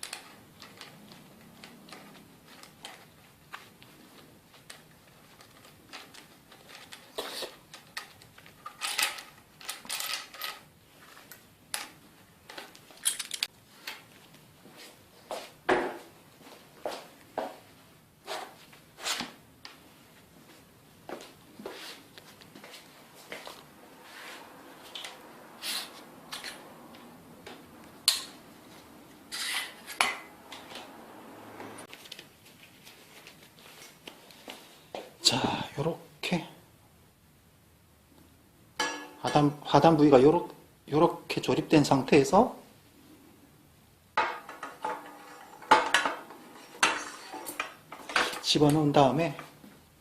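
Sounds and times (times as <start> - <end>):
metal tools clinking and rattling: 8.0 - 10.7, 13.0 - 13.5, 44.2 - 48.5
metal parts scraping: 8.6 - 10.7, 13.0 - 13.5, 29.3 - 30.0, 44.4 - 48.4.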